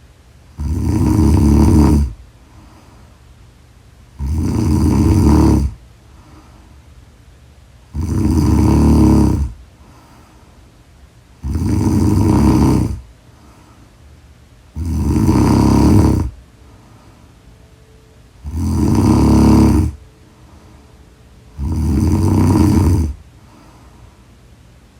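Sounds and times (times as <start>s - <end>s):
quiet breathing: 0.0s - 24.9s
loud snoring: 0.5s - 2.2s, 4.1s - 5.8s, 7.9s - 9.6s, 11.4s - 13.1s, 14.7s - 16.4s, 18.4s - 20.0s, 21.5s - 23.2s.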